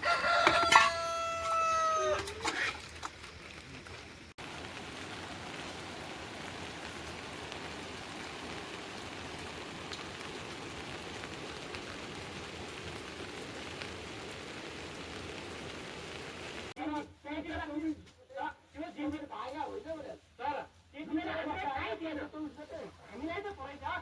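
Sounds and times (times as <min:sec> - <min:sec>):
steady rain falling: 0:00.0 - 0:17.8.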